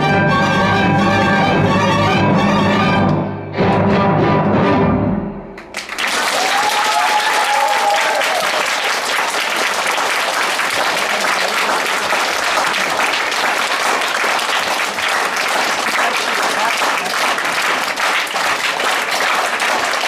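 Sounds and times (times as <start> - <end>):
orchestra chord: 0.0 - 5.6
audience applause: 5.6 - 20.0.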